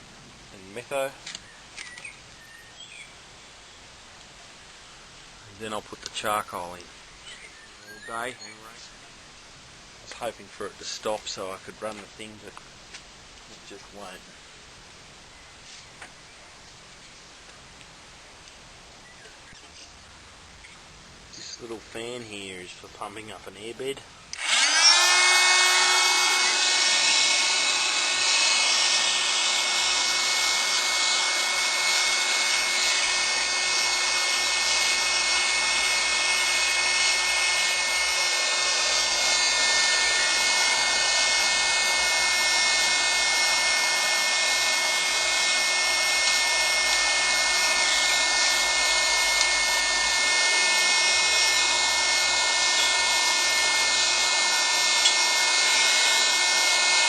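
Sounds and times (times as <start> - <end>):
electric air pump whirring: 24.3 - 57.0.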